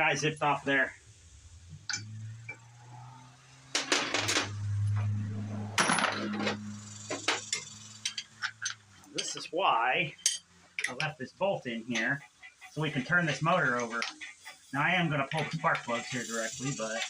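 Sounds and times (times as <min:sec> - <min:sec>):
metallic clinks of tools: 0:05.8 - 0:09.4, 0:10.2 - 0:11.1.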